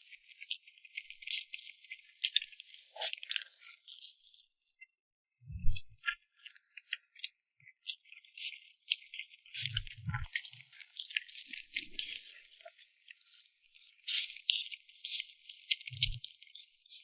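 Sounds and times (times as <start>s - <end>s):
soft low thumps: 5.5s - 6.0s.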